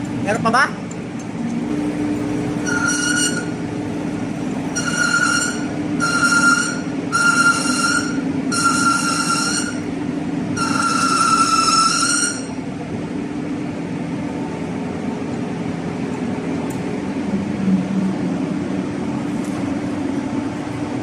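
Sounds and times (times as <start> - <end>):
metal lathe humming: 0.0 - 21.0
cutting tool squealing: 2.6 - 3.7, 4.6 - 9.9, 10.6 - 12.6.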